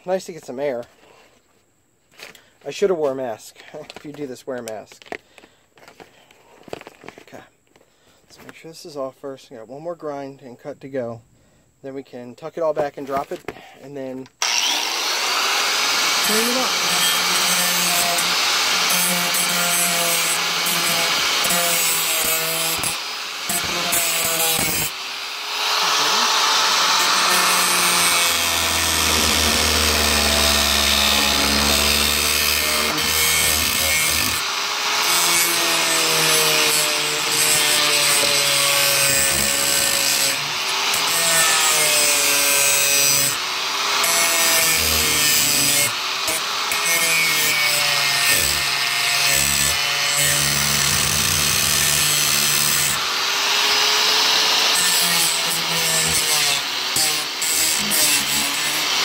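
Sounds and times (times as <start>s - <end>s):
power grinder cutting panel: 14.4s - 59.0s.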